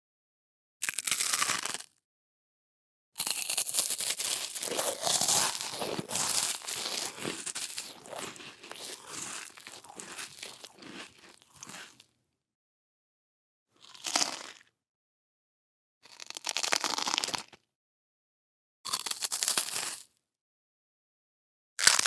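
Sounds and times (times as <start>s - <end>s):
person chewing crunchy food: 3.6s - 12.0s.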